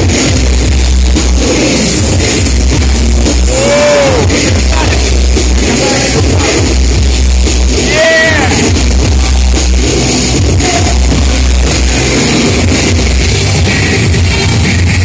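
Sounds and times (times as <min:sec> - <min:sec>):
loud rock music with guitar: 0:00.0 - 0:15.0.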